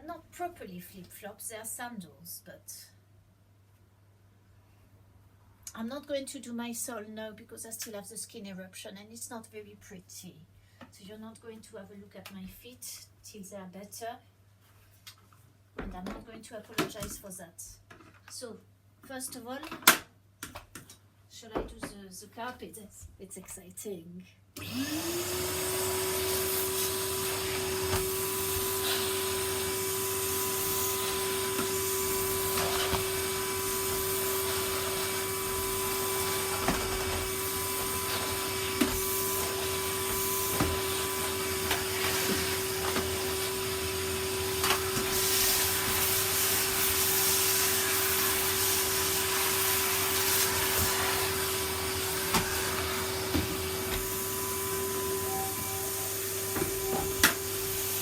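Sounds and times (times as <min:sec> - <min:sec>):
vacuum cleaner whining: 0:24.6 - 0:58.0.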